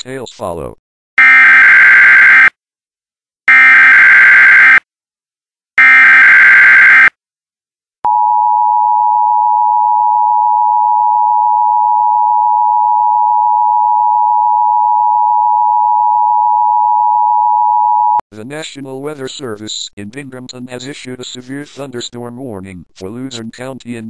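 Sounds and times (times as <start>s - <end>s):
two-tone alarm tone: 1.2s - 2.5s, 3.5s - 4.8s, 5.8s - 7.1s, 8.1s - 18.2s.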